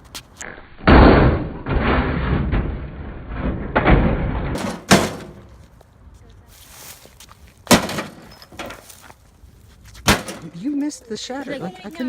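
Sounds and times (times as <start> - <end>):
microwave oven being smashed: 0.8 - 5.4, 7.7 - 8.8.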